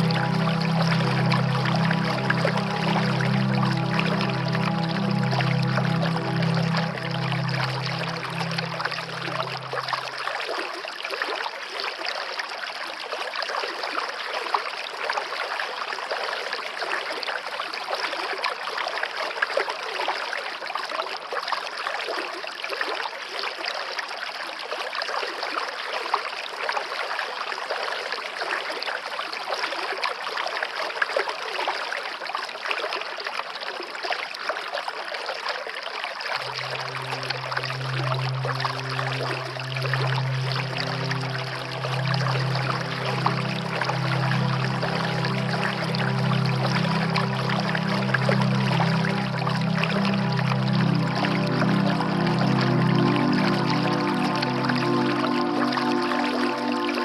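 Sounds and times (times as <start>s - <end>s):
low music notes: 0.0s - 10.3s, 36.4s - 57.0s
waterfall rushing: 0.0s - 10.3s, 36.4s - 57.0s.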